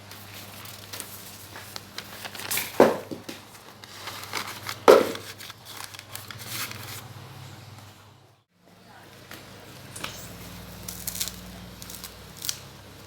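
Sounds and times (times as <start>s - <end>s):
plastic crinkling: 0.2s - 7.1s, 10.8s - 12.7s.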